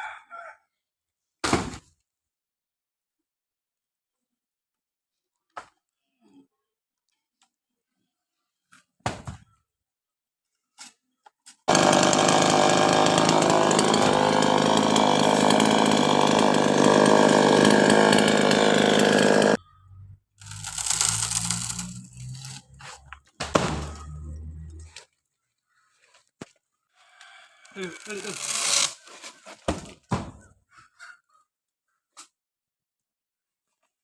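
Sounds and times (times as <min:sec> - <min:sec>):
chainsaw running: 0:11.7 - 0:19.6, 0:20.4 - 0:22.8, 0:27.7 - 0:29.0.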